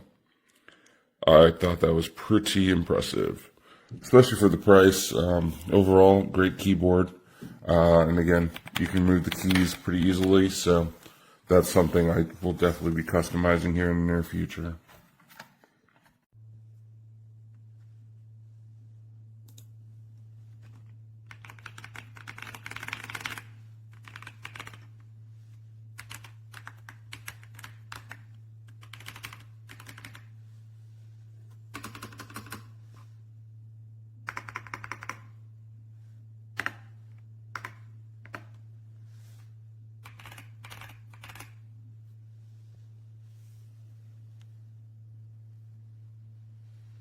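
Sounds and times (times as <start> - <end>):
steady low hum: 0.0 - 15.0, 16.0 - 47.0
mechanical keyboard typing: 8.4 - 10.6, 21.3 - 24.9, 26.0 - 30.3, 31.7 - 32.7, 34.3 - 35.3, 36.6 - 36.9, 37.6 - 38.5, 40.0 - 41.6.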